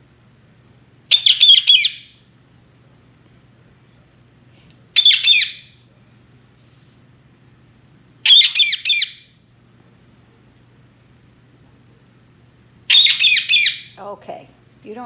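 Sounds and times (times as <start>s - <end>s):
parakeet squawking: 1.1s - 2.2s, 5.0s - 5.8s, 8.2s - 9.3s, 12.9s - 14.0s.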